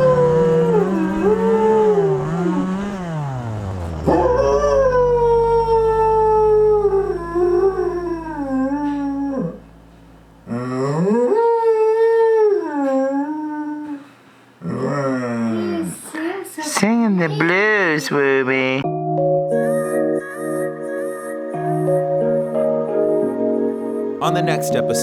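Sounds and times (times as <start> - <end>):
dog howling: 0.0 - 14.0.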